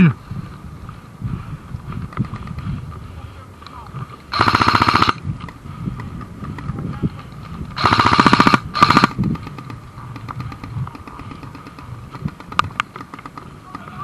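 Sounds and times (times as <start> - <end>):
airsoft gun full-auto bursts: 4.3 - 5.2, 7.8 - 12.6.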